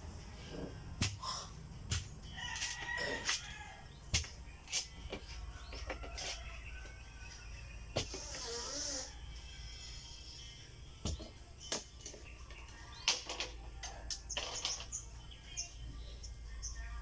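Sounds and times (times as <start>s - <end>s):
rooster crowing: 2.3s - 3.9s, 5.6s - 7.4s.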